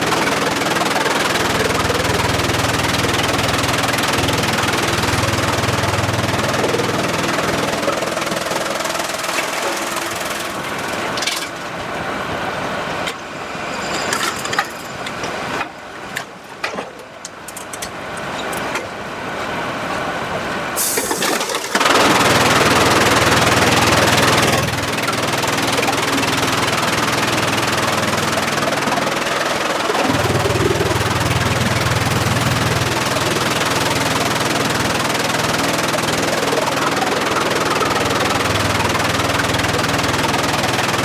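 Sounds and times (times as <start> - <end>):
loud steady machine noise: 0.0 - 41.0
sawmill machinery running: 0.0 - 41.0.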